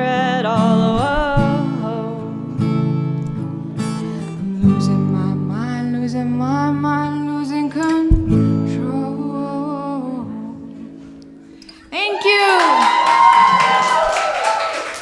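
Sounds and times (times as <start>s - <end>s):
acoustic guitar strumming: 0.0s - 11.8s.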